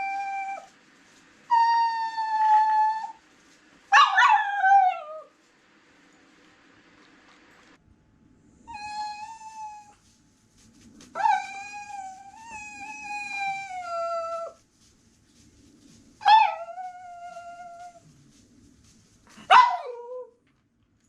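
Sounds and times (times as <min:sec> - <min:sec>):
dog howling: 0:00.0 - 0:00.7, 0:11.2 - 0:14.6, 0:16.2 - 0:18.0.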